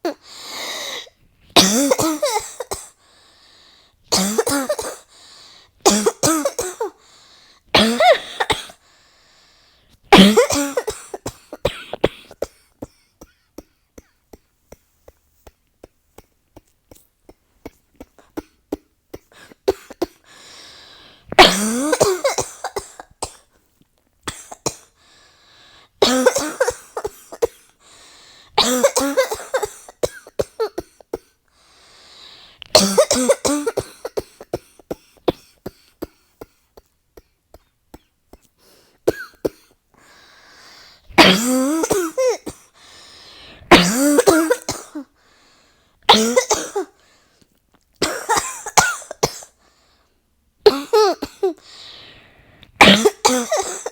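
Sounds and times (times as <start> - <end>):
person coughing: 0.9 - 3.0, 4.1 - 5.1, 5.8 - 7.0, 7.8 - 8.8, 10.2 - 15.2, 21.3 - 23.5, 24.3 - 24.9, 26.0 - 27.7, 28.6 - 31.4, 32.7 - 38.1, 39.1 - 39.8, 41.2 - 42.8, 43.7 - 45.2, 46.1 - 47.0, 48.0 - 49.6, 50.6 - 51.8, 52.8 - 53.9
faint breaths: 3.0 - 4.1, 5.1 - 5.8, 7.0 - 7.7, 8.8 - 10.1, 20.2 - 21.4, 24.9 - 26.0, 27.8 - 28.6, 31.5 - 32.7, 39.9 - 41.2, 42.7 - 43.7, 45.1 - 46.0, 46.9 - 47.6, 49.6 - 50.3, 51.6 - 52.8.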